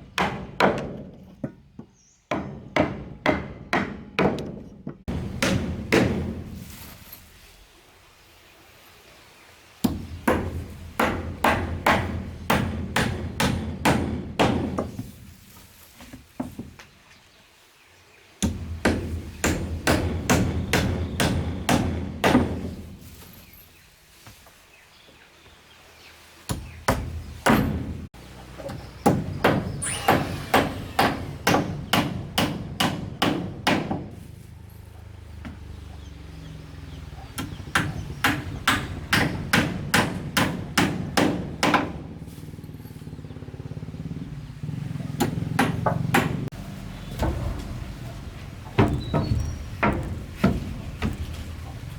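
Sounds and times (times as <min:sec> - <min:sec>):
hammer blows: 0:29.1 - 0:34.1.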